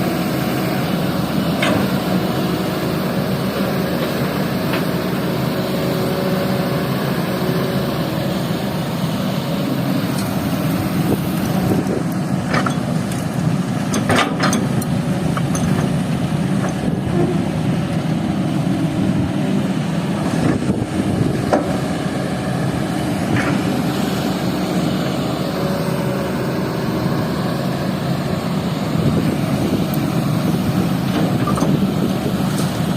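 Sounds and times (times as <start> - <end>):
excavator diesel engine running: 0.0 - 32.9.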